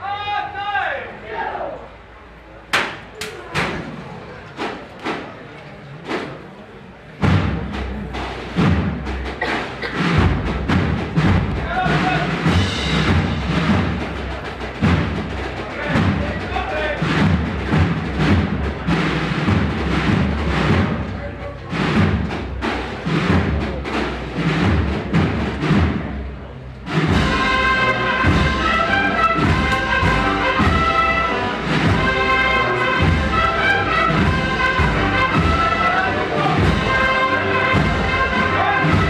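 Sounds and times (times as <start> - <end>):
drums beating march rhythm: 2.7 - 39.0
brass band playing march: 7.2 - 21.1, 26.9 - 39.0.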